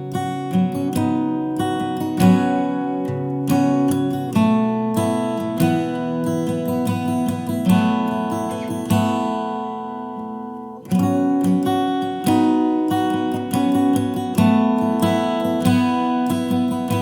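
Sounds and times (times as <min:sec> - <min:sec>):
acoustic guitar strumming: 0:00.0 - 0:17.0.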